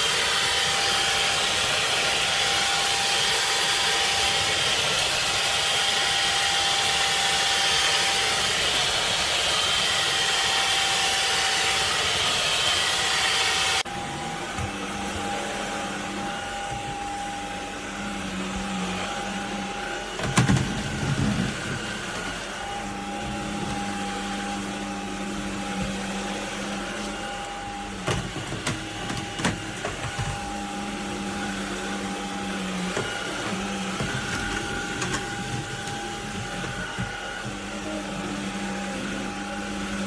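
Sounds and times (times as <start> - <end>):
vacuum cleaner running: 0.0 - 40.0
knocks and rattles: 20.2 - 21.9, 28.0 - 30.4.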